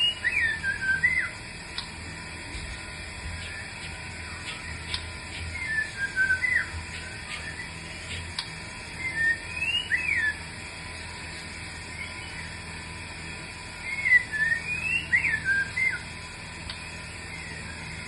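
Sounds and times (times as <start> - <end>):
bird whistling song: 0.0 - 1.4, 3.3 - 8.2, 8.9 - 10.4, 11.9 - 12.6, 13.8 - 16.1, 17.2 - 18.0.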